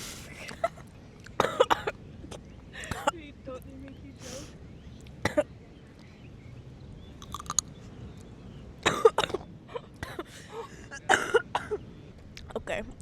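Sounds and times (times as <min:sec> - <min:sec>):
person coughing: 0:01.4 - 0:01.9, 0:02.8 - 0:03.1, 0:08.9 - 0:10.3, 0:11.1 - 0:11.8.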